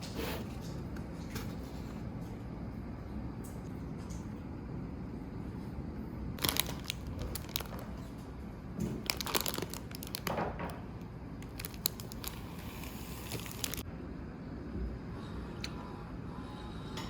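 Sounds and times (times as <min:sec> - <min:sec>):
wrapping material crumpling: 0:06.4 - 0:08.2, 0:08.9 - 0:10.5, 0:11.4 - 0:13.8.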